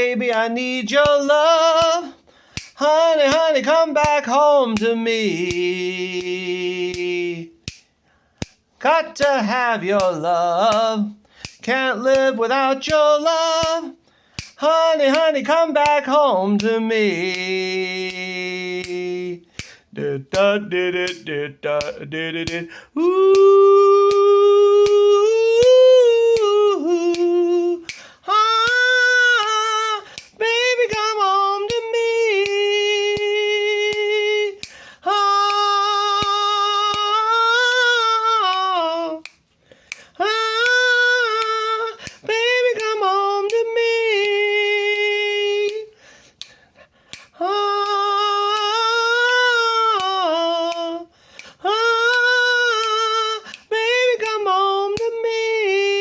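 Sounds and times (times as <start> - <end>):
finger snaps: 0.3 - 8.6, 9.2 - 55.6
woman singing wordless notes: 14.6 - 39.4, 40.0 - 46.6, 47.2 - 56.0.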